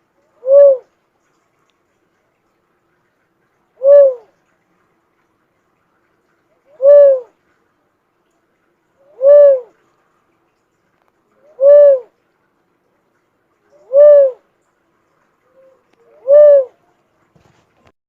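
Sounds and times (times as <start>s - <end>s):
bird hooting: 0.4s - 0.9s, 3.8s - 4.3s, 6.7s - 7.3s, 9.1s - 9.7s, 11.4s - 12.1s, 13.8s - 14.4s, 15.5s - 16.8s.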